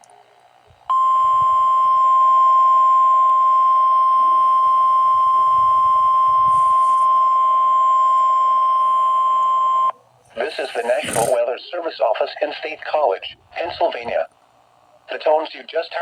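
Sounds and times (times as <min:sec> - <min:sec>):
faint radio hiss: 0:05.5 - 0:07.2, 0:09.9 - 0:16.0.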